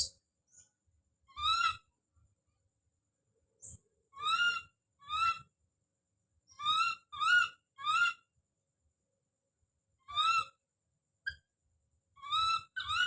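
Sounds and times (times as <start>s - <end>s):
baby monkey screaming: 1.3s - 1.9s, 4.2s - 5.4s, 6.6s - 8.2s, 10.1s - 10.6s, 12.2s - 13.0s.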